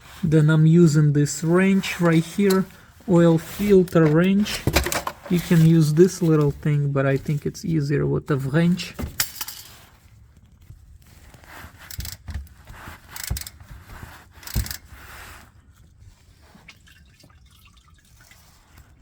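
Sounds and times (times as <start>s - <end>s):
metal clanks and scrapes: 9.0s - 10.0s
oil dripping and trickling: 15.7s - 19.0s.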